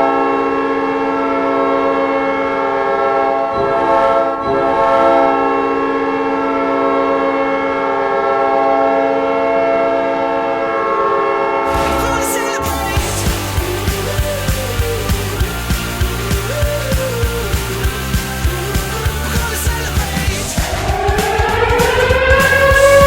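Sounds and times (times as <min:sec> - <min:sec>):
rock song: 0:11.7 - 0:23.0
goal horn air-horn chord: 0:20.3 - 0:23.0.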